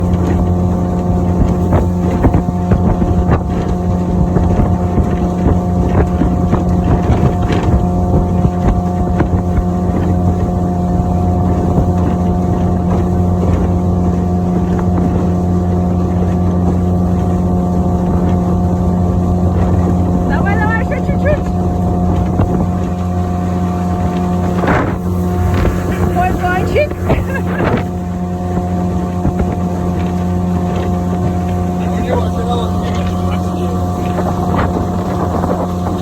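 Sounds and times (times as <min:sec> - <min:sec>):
outboard motor running: 0:00.0 - 0:36.0
wind noise on microphone: 0:00.0 - 0:36.0.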